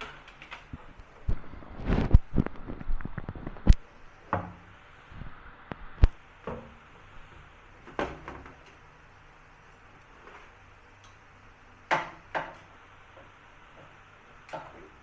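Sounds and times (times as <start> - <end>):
sharp knocks of panels: 11.9 - 12.7.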